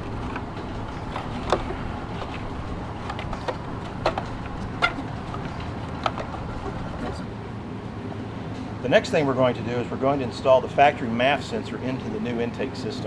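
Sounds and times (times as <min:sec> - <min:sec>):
steady low hum: 0:00.0 - 0:13.0
clicks and knocks of parts handled: 0:00.2 - 0:06.8.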